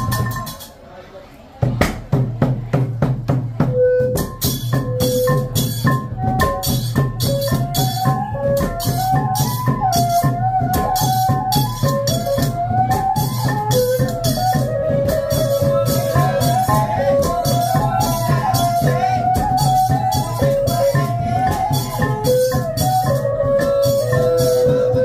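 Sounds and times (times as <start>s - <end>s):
drums beating fast: 0.0s - 0.7s, 1.6s - 25.0s
small cymbals jingling: 0.0s - 0.8s, 4.2s - 10.2s.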